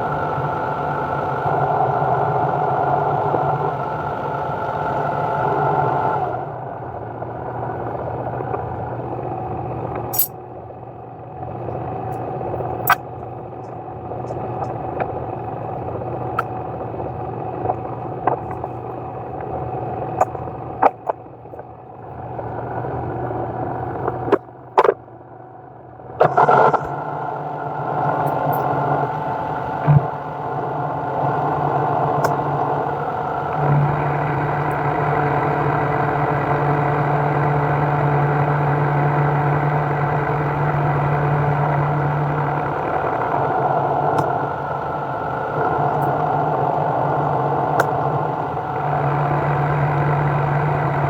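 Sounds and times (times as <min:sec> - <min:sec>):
machine motor humming: 0:26.2 - 0:51.0.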